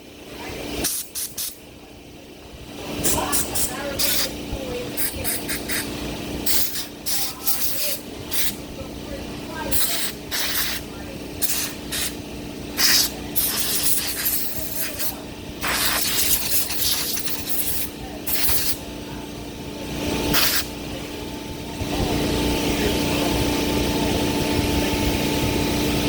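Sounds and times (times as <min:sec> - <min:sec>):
spray hissing: 0:00.8 - 0:01.6, 0:03.0 - 0:08.6, 0:09.7 - 0:12.2, 0:12.8 - 0:18.8, 0:20.3 - 0:20.7
small engine running: 0:02.6 - 0:26.0.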